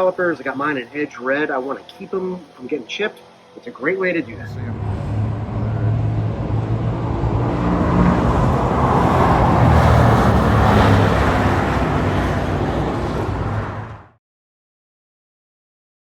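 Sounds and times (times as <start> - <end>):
car engine running: 4.2 - 14.1.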